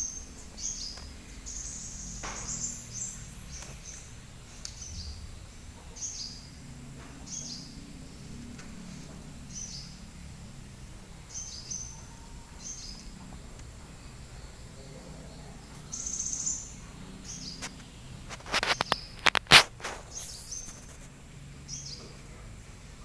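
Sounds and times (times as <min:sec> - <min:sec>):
low background rumble: 0:00.0 - 0:18.3
small bird chirping: 0:00.0 - 0:22.3.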